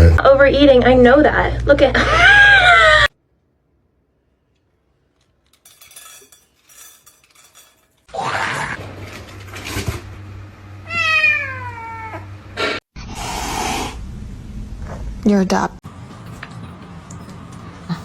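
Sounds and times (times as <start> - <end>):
steady low hum: 0.0 - 2.0
cat meowing: 10.9 - 12.3.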